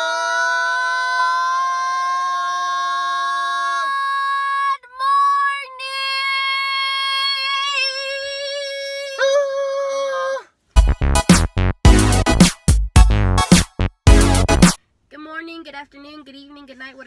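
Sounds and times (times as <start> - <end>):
electronic drum beat: 10.8 - 14.8.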